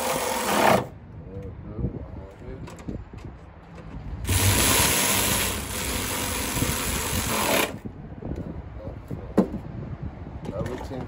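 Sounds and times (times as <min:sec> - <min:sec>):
power tool whirring: 0:00.0 - 0:00.9, 0:04.3 - 0:07.8.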